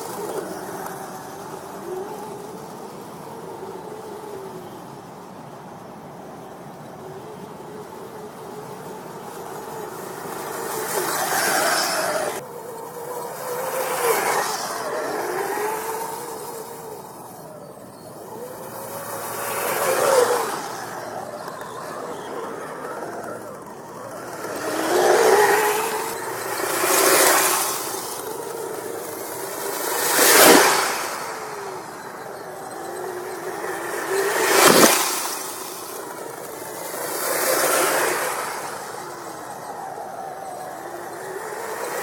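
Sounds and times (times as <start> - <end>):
electric motor whining: 9.2 - 42.0.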